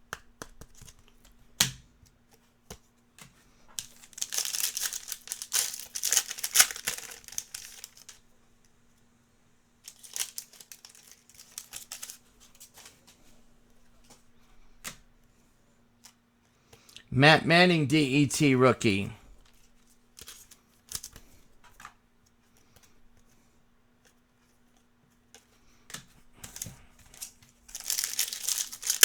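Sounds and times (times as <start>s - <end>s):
foil wrapper tearing and crinkling: 4.2s - 8.0s, 9.9s - 12.2s, 27.8s - 29.0s.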